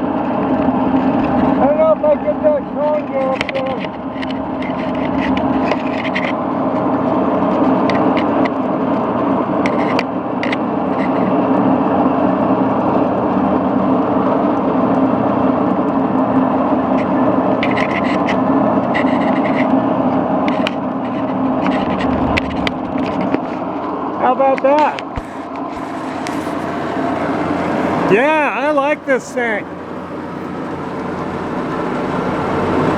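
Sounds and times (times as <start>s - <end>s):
lathe running: 25.0s - 32.9s.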